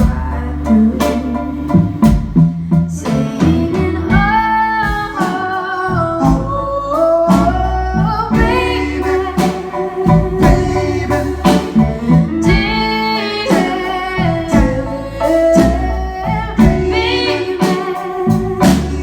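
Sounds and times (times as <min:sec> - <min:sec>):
bass: 0:00.0 - 0:19.0
drum hits: 0:00.0 - 0:19.0
guitar: 0:00.0 - 0:19.0
person singing: 0:00.0 - 0:19.0.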